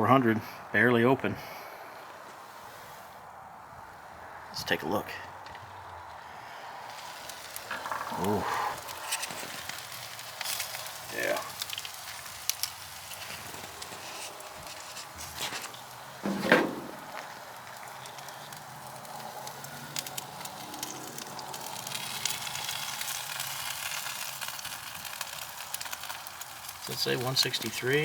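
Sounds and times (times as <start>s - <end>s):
fat popping and crackling: 5.4s - 28.0s
meat sizzling over charcoal: 6.0s - 28.0s
loud knock: 16.3s - 17.1s.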